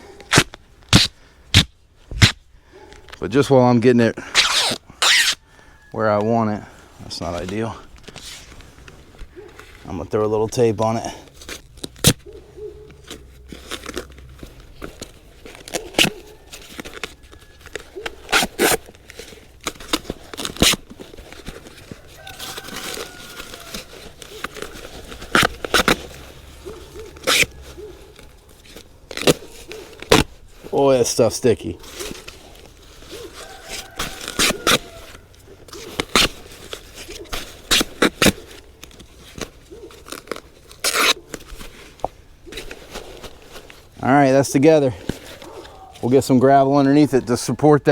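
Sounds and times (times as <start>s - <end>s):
sticky tape ripping off roll: 0.3s - 2.4s, 4.2s - 5.4s, 17.0s - 21.0s, 22.6s - 26.5s, 27.2s - 27.6s, 33.8s - 35.1s, 35.7s - 36.5s, 37.5s - 38.4s, 40.1s - 41.4s.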